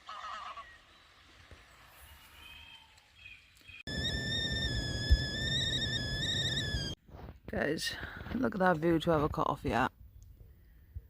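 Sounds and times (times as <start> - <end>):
kettle whistling: 3.9 - 7.0.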